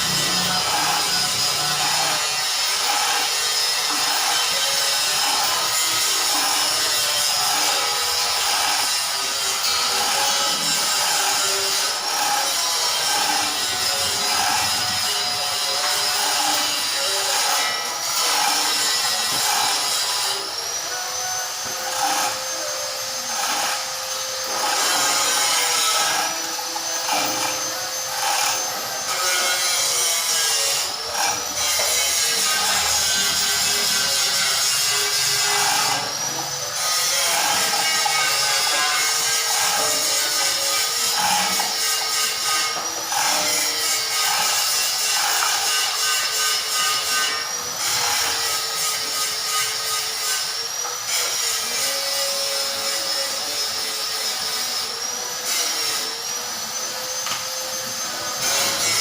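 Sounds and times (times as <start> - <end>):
machinery grinding hiss: 0.0 - 2.2
high machine whine: 0.0 - 59.0
workshop machinery running: 0.0 - 59.0.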